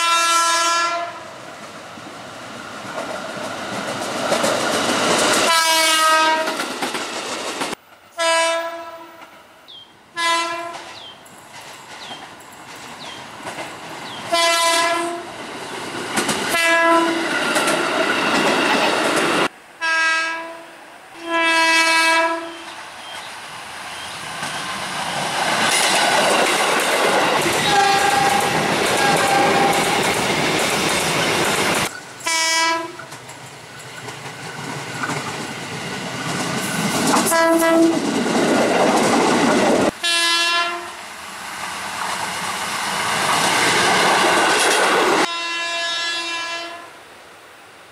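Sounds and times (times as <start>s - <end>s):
train horn blasts: 0.0s - 1.3s, 5.5s - 6.6s, 8.1s - 9.3s, 10.2s - 10.9s, 14.3s - 15.3s, 16.5s - 17.3s, 19.8s - 22.8s, 27.6s - 30.0s, 32.2s - 33.0s, 37.2s - 38.0s, 40.0s - 41.0s, 45.2s - 47.0s
train running past: 0.0s - 47.0s
wheels clacking on rails: 2.7s - 8.0s, 10.6s - 19.5s, 22.6s - 40.0s, 41.9s - 45.3s.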